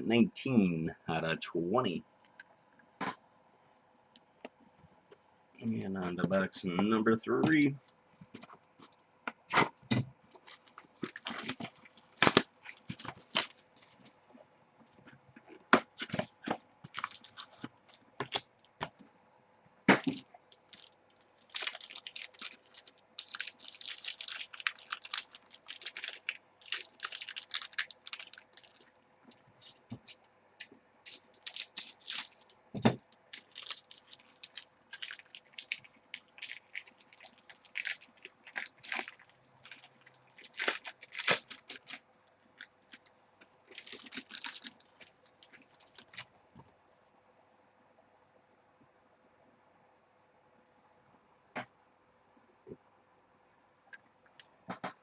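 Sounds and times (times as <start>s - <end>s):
packaging tearing and crinkling: 10.3s - 14.1s, 15.6s - 18.7s, 20.0s - 30.2s, 31.1s - 42.0s, 42.6s - 46.3s.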